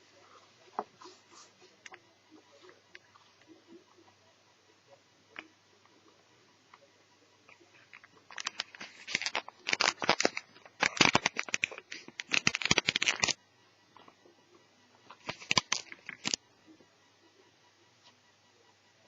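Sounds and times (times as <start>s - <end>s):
plastic crackling and clicking: 7.5s - 13.4s, 15.1s - 16.4s.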